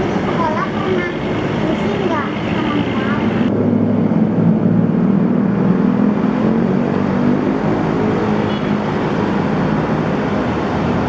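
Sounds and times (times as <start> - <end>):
bus engine running: 0.0 - 11.0
road and traffic noise: 0.0 - 11.0.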